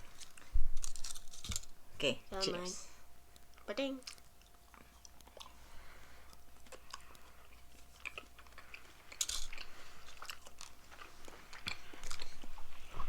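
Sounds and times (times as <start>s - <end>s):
chocolate biting and chewing: 0.0s - 1.8s, 3.3s - 13.0s.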